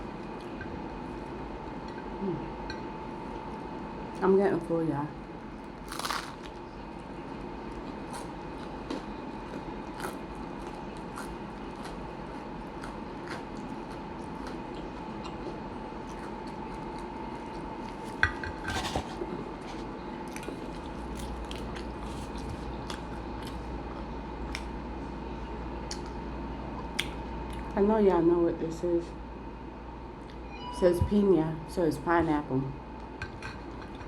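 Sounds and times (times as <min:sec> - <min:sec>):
background hum: 0:00.0 - 0:34.0
chewing with mouth clicks: 0:05.5 - 0:24.8, 0:25.8 - 0:26.2, 0:26.8 - 0:27.8.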